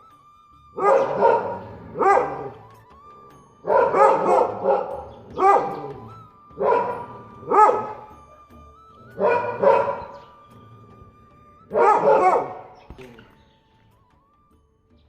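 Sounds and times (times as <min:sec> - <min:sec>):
dog barking aggressively: 0:00.8 - 0:02.6, 0:03.6 - 0:08.0, 0:09.2 - 0:10.2, 0:11.7 - 0:12.7.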